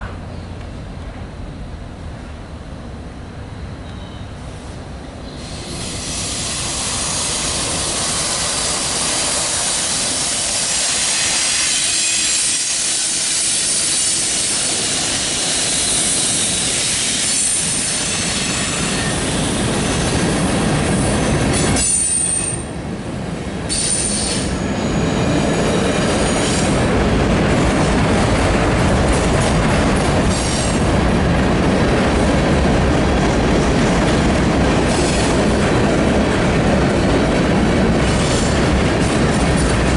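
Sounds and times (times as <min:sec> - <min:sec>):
freight train rumbling past: 0:00.0 - 0:39.9
rail clickety-clack: 0:03.8 - 0:39.9
wheel squeal: 0:05.4 - 0:20.2.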